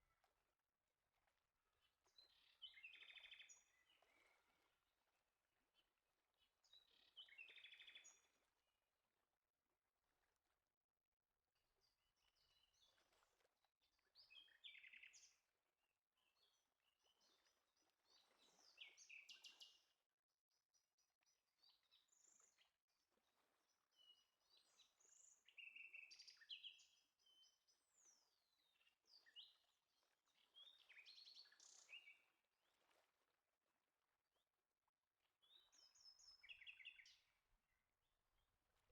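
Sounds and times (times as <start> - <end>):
faint birdsong: 1.5 - 8.6, 13.8 - 32.9, 35.3 - 38.9.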